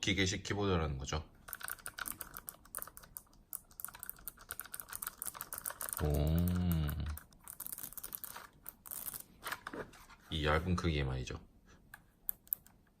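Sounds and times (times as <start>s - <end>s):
fast typing on mechanical keyboard: 1.4s - 9.2s
person humming: 6.0s - 7.2s.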